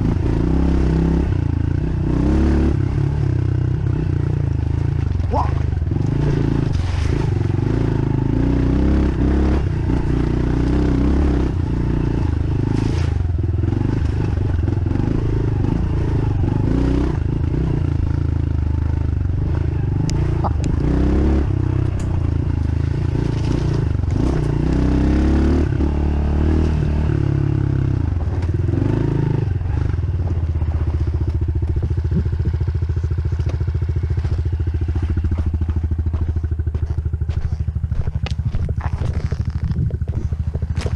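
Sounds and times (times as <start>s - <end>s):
dirt bike engine revving: 0.0s - 40.9s
bike clattering over rough ground: 31.2s - 40.9s.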